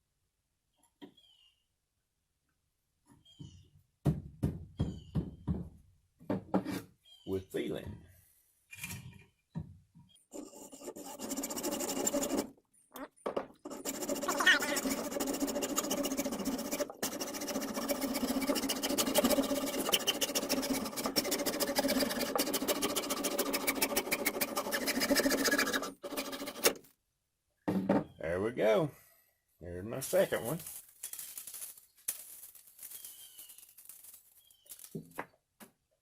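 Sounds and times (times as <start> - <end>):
saw rasping through plastic pipe: 10.2 - 12.6, 13.6 - 26.9.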